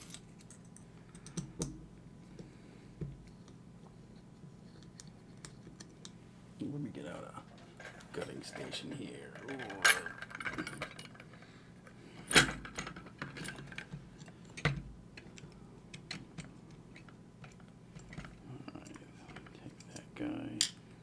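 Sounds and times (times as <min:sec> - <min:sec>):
metal tools clicking and clinking: 0:07.4 - 0:11.4.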